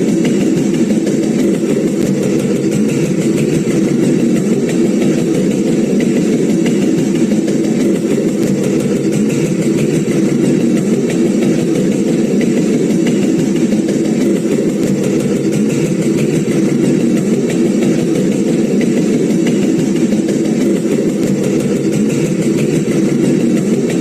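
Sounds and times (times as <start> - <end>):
fast rattle: 0.0 - 24.0
sieve shaker motor rumble: 0.0 - 24.0.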